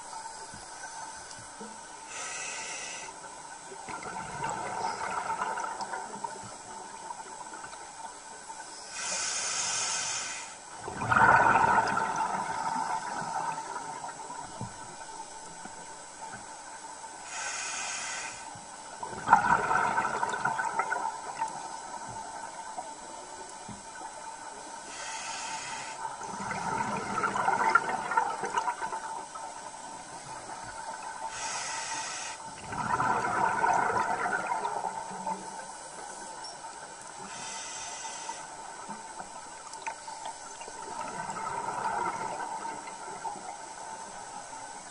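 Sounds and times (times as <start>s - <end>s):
regulator inhale hiss: 2.0s - 3.3s, 8.8s - 10.7s, 17.2s - 18.7s, 24.8s - 26.3s, 31.2s - 32.5s, 37.2s - 38.8s.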